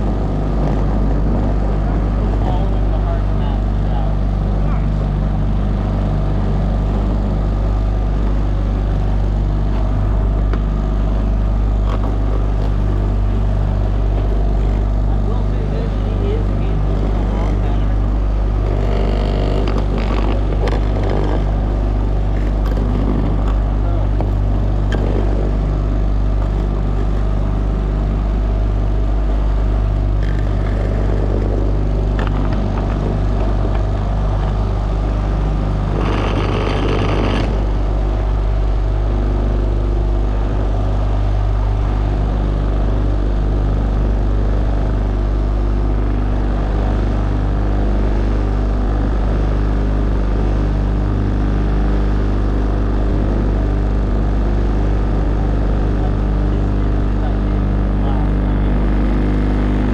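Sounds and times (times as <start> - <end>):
motorboat engine droning: 0.0 - 59.9
wind: 0.0 - 59.9
water noise: 6.4 - 45.0.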